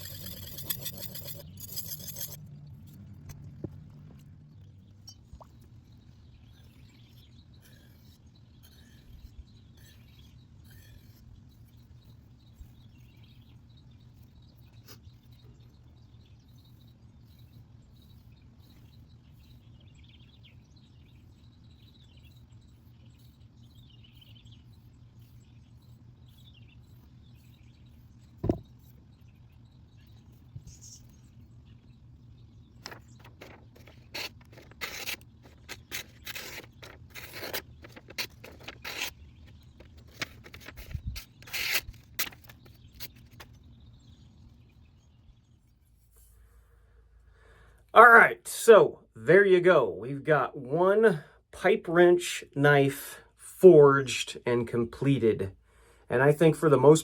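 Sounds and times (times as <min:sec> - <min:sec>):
steady low hum: 0:00.0 - 0:57.0
faint bird chirps: 0:04.4 - 0:49.3
knife slicing through paper: 0:33.2 - 0:39.2, 0:39.9 - 0:43.4.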